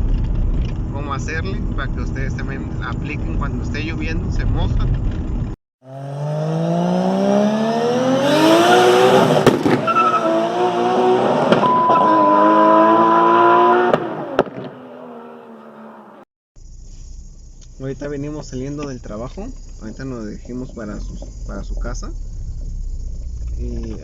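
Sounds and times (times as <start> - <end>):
car engine revving: 0.0 - 16.2.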